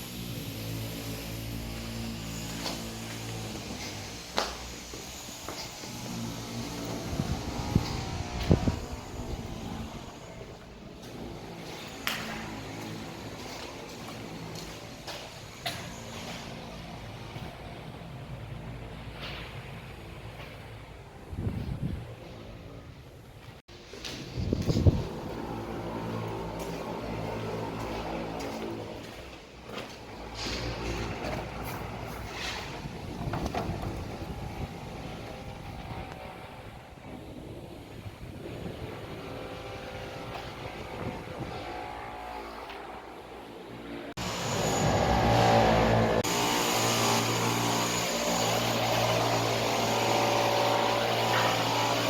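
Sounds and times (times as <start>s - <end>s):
engine humming: 0.0s - 23.6s.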